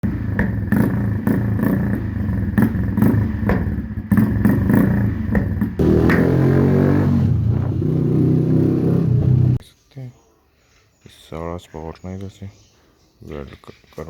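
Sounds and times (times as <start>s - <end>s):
exhaust pops and crackles: 0.0s - 8.0s
motorcycle engine revving: 0.0s - 9.6s.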